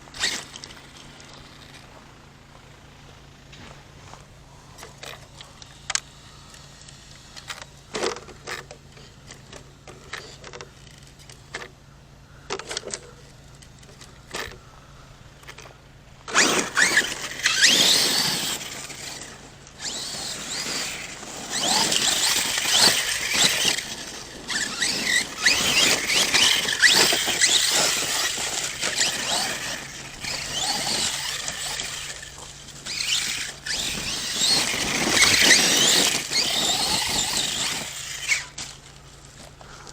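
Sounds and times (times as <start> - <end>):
tyres churning dirt: 0.0 - 39.9
electric motor whining: 16.3 - 38.9.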